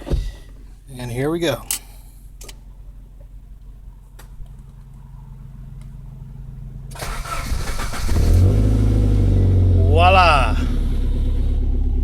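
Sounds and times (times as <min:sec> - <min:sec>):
steady low hum: 0:00.0 - 0:07.0
engine starter cranking: 0:06.9 - 0:09.0.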